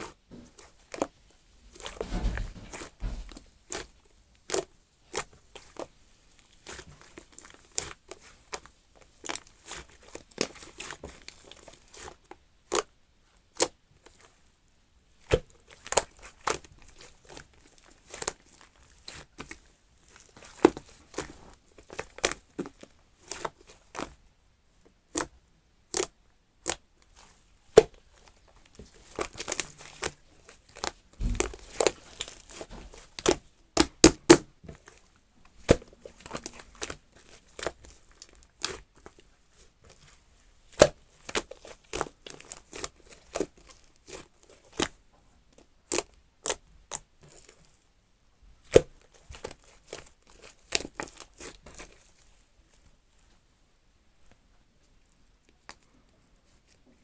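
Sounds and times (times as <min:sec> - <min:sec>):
slime squished by hand: 0:25.9 - 0:45.0.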